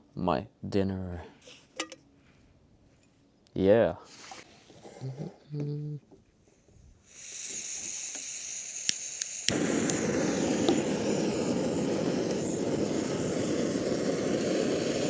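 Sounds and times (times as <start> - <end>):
gas hissing from burner: 7.0 - 15.0
burner flame rushing: 7.1 - 15.0
igniter clicking: 8.8 - 10.9.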